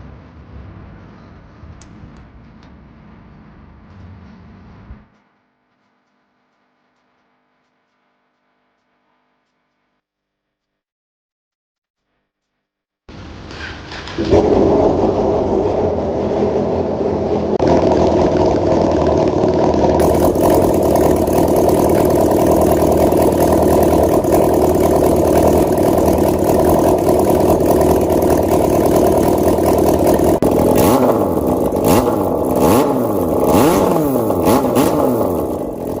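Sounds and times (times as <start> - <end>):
motorcycle engine revving: 13.1 - 36.0.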